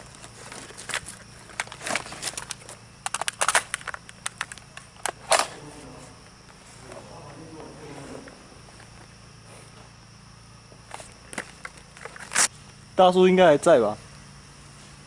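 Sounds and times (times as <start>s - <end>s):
sharp clicks and crunches: 0.0s - 5.6s, 10.8s - 12.5s
high insect drone: 0.0s - 15.0s.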